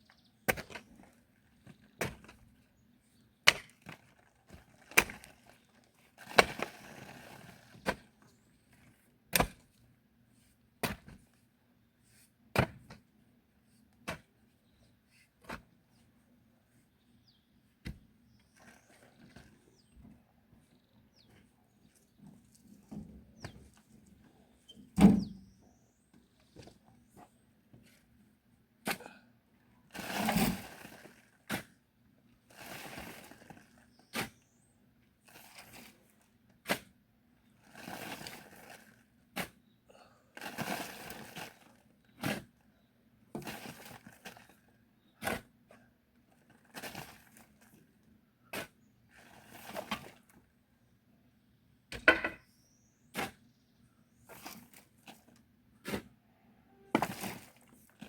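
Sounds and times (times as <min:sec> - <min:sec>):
digging tool scraping soil: 0:36.6 - 0:37.0, 0:40.4 - 0:42.6, 0:55.8 - 0:56.2.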